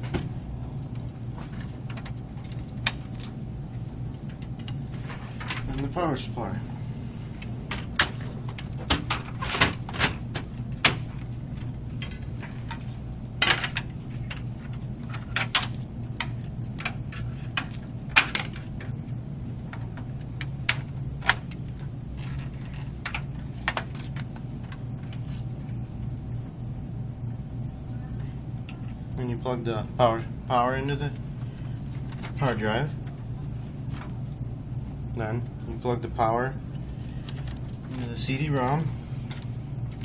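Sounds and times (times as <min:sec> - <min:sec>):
steady low hum: 0:00.0 - 0:40.0
clicks and knocks of computer parts: 0:00.9 - 0:03.4, 0:04.1 - 0:06.0, 0:07.4 - 0:19.0, 0:19.6 - 0:25.4, 0:31.5 - 0:33.2.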